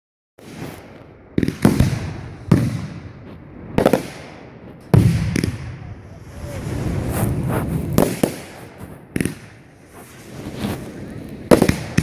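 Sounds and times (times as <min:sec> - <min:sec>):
fireworks bangs: 0:00.4 - 0:12.0.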